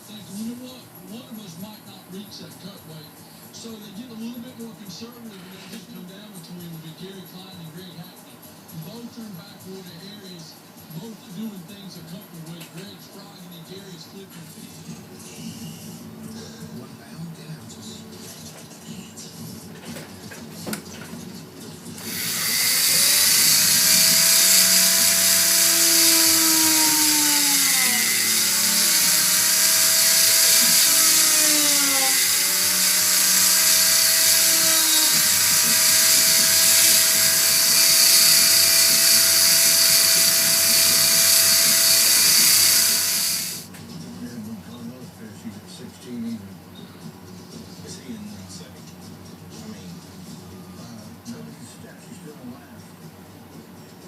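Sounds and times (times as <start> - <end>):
rotary tool whining: 21.9 - 43.7.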